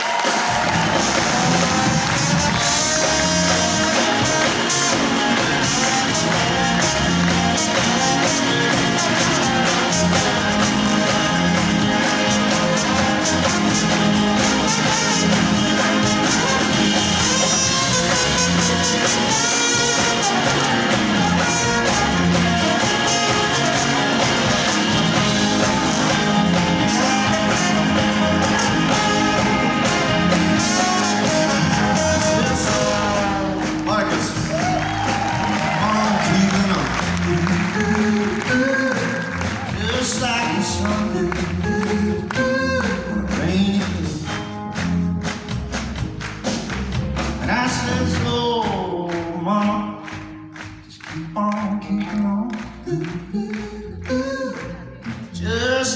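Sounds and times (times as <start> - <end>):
drums: 0.0 - 55.9
guitar: 0.0 - 55.9
bass: 0.1 - 55.9
trombone solo: 0.6 - 38.2.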